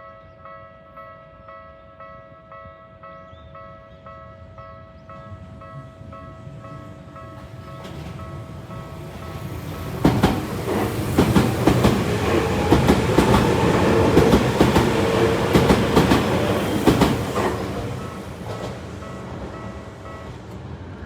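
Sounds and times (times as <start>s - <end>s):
rushing of train cars: 6.5s - 21.0s
train wheels clacking over rail joints: 9.7s - 19.2s.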